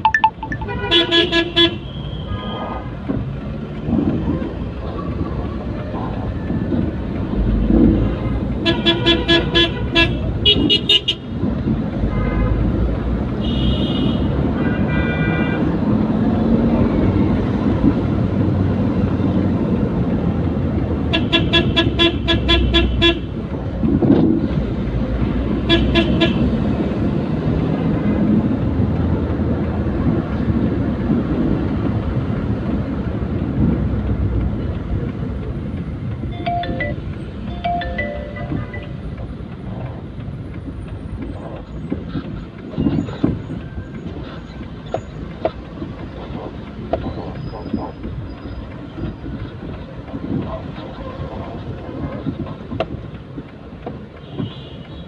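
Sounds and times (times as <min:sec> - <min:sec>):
road and engine noise: 0:00.0 - 0:55.0
vehicle horn honking: 0:00.6 - 0:02.0.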